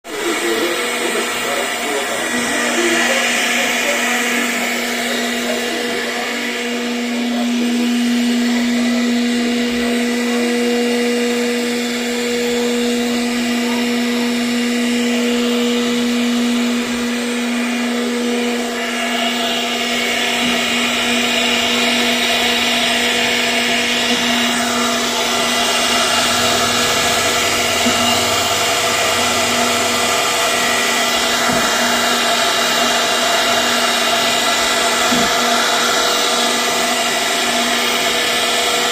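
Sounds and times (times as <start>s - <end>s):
router bit cutting wood: 0.0s - 38.9s
router spindle motor whine: 0.1s - 38.9s.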